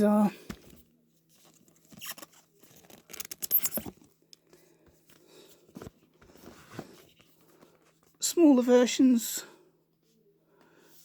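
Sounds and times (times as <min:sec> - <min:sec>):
books rustling: 0:00.4 - 0:08.2.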